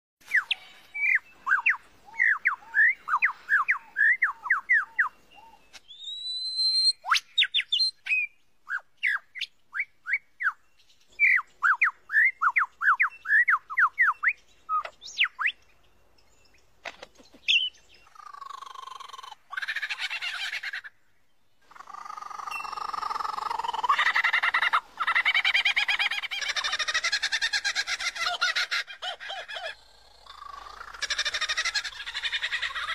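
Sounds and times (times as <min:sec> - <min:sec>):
lyrebird whistled song: 0:00.2 - 0:16.7, 0:17.4 - 0:19.2
harsh buzzy bird calls: 0:17.0 - 0:21.0, 0:21.6 - 0:32.9.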